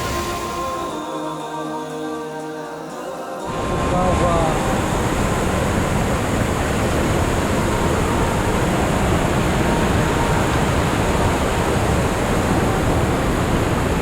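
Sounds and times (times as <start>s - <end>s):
waterfall roaring: 3.5s - 14.0s.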